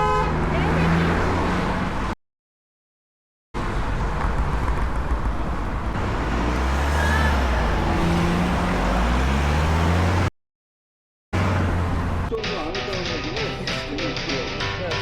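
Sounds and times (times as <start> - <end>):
vehicle engines running: 3.6 - 10.3.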